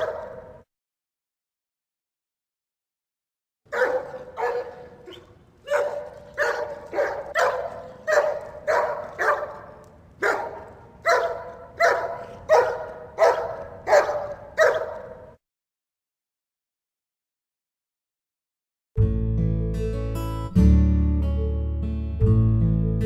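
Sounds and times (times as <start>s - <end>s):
dog barking: 0.0s - 0.6s, 3.7s - 15.4s.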